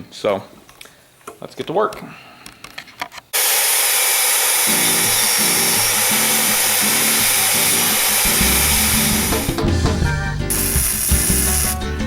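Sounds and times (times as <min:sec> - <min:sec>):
angle grinder cutting steel: 0:03.4 - 0:09.6, 0:10.5 - 0:11.8
upbeat background music: 0:04.7 - 0:12.0.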